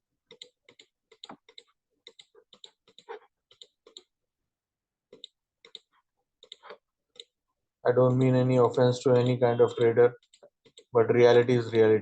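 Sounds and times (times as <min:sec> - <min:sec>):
faint computer clicking: 0:08.6 - 0:10.9.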